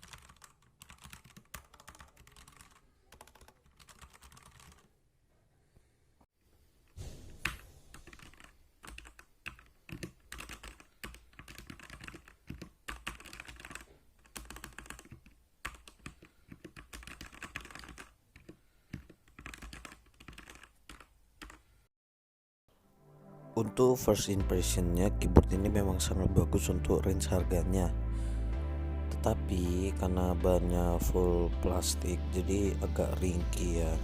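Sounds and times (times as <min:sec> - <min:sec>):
mechanical keyboard typing: 0:00.0 - 0:04.9, 0:07.5 - 0:21.6.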